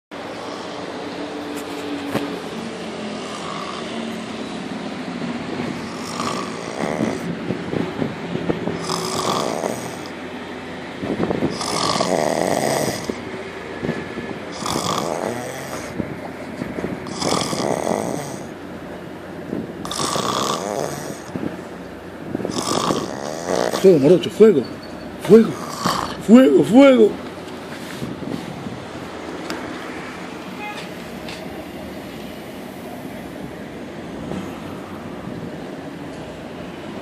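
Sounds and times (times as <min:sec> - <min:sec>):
person snoring: 0:00.4 - 0:00.9, 0:03.2 - 0:04.0, 0:05.8 - 0:07.3, 0:08.8 - 0:10.1, 0:11.5 - 0:13.2, 0:14.5 - 0:16.0, 0:17.0 - 0:18.5, 0:19.8 - 0:21.4, 0:22.5 - 0:24.0, 0:25.4 - 0:26.2.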